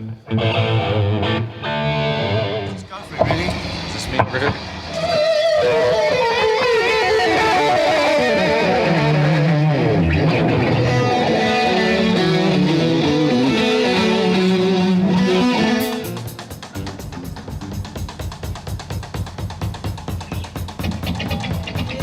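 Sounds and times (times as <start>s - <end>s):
electric guitar lead: 0.0s - 18.2s, 20.1s - 22.0s
drum kit fast strokes: 15.2s - 22.0s.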